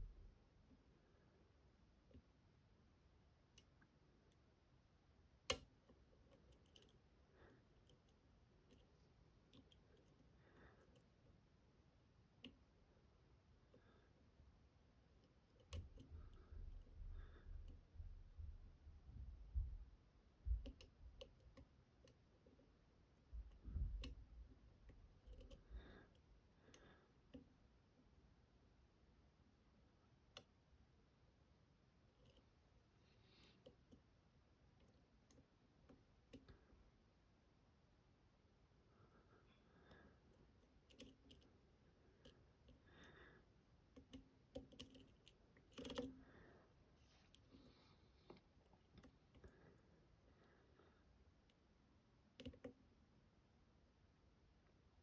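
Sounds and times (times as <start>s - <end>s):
lock pick clicking in a lock: 24.9s - 25.6s, 40.9s - 41.5s, 44.0s - 46.1s.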